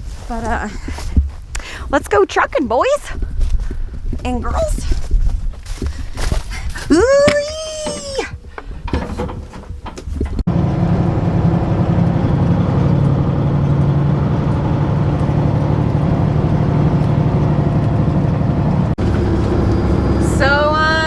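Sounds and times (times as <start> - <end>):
diesel truck engine droning: 7.1 - 21.0.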